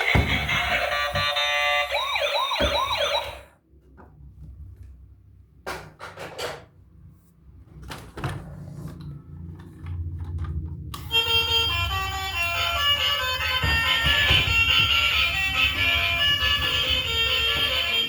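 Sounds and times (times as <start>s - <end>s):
plastic toy vehicles knocking: 0.0s - 1.6s, 12.8s - 18.0s.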